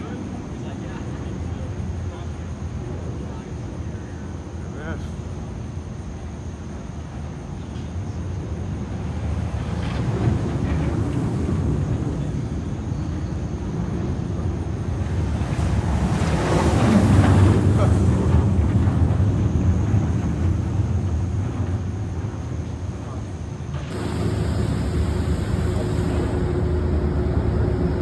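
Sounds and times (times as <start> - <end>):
roller coaster rumble: 9.0 - 28.0.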